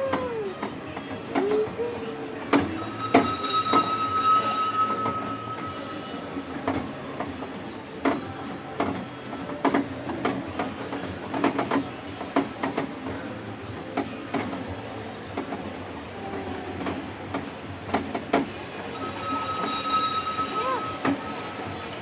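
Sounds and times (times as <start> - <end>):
ride train cars rattling: 0.0 - 22.0
steady high tone: 2.8 - 6.6, 18.9 - 22.0.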